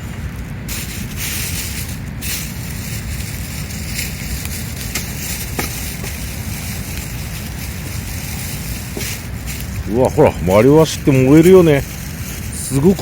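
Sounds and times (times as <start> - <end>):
steady low rumble: 0.0 - 13.0
wood fire crackling: 0.0 - 13.0.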